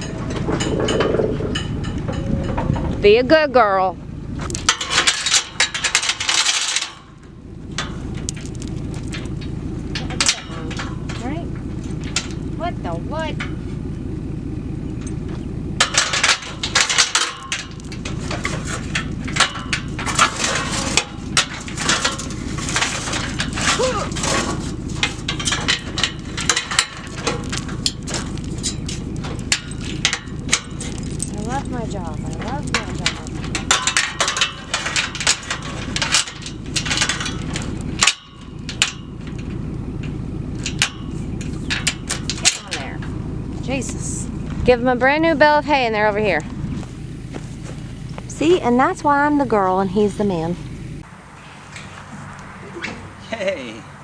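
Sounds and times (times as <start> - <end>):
sharp knocks and clanks: 0.0 - 3.2, 4.4 - 13.8, 14.8 - 44.8
low engine rumble: 0.0 - 54.0.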